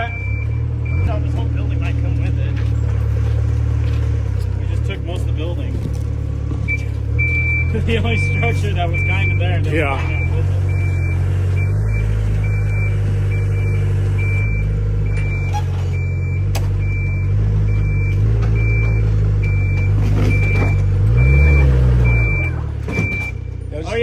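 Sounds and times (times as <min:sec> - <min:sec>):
backup alarm beeping: 0:00.0 - 0:01.5, 0:06.6 - 0:23.5
heavy machine engine running: 0:00.0 - 0:24.0.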